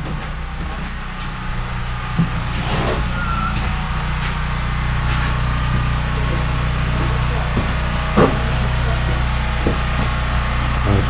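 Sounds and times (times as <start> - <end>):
low mechanical hum: 0.0 - 11.0.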